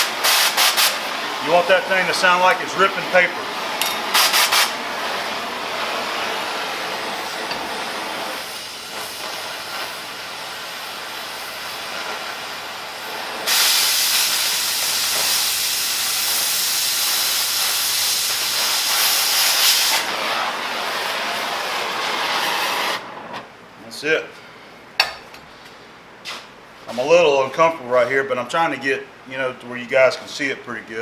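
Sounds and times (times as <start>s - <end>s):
cutting torch hissing: 0.0s - 23.5s.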